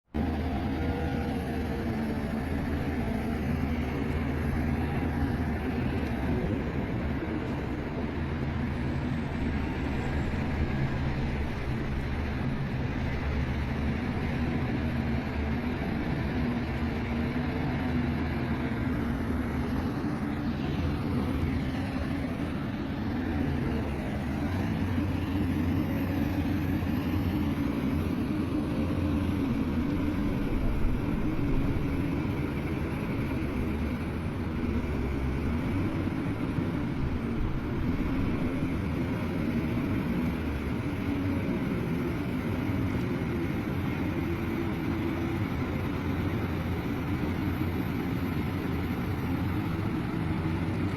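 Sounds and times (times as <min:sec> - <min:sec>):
heavy machinery diesel engine: 0:00.0 - 0:50.9.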